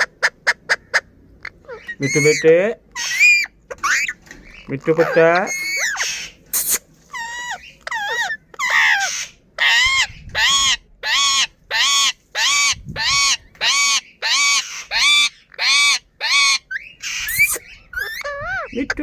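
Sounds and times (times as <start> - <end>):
parrot calling: 0.0 - 19.0.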